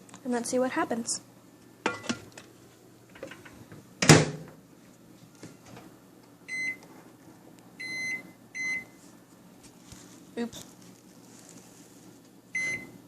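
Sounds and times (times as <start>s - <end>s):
microwave door shutting: 4.0s - 4.6s
short keypad beep: 12.6s - 12.9s.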